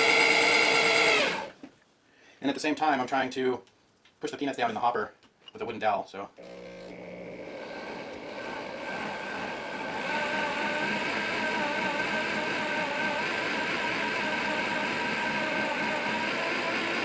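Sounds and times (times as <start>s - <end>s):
electric drill whining: 0.0s - 1.6s, 6.4s - 17.0s
grain mill grinding: 0.0s - 1.6s, 6.4s - 17.0s.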